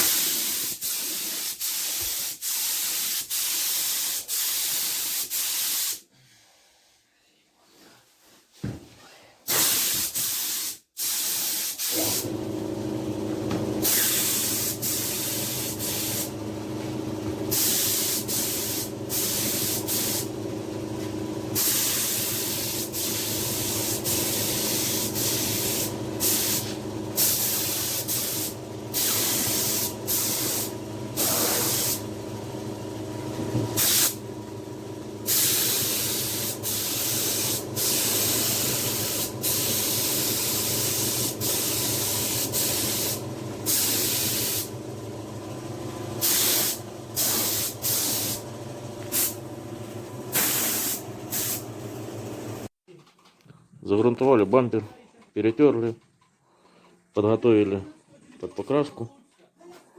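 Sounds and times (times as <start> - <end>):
spray gun hissing: 0.0 - 6.0, 9.5 - 12.3, 13.8 - 16.3, 17.5 - 20.3, 21.5 - 32.1, 33.8 - 34.2, 35.2 - 44.7, 46.2 - 48.4, 49.1 - 49.4, 50.3 - 51.7
motor hum: 12.2 - 50.4.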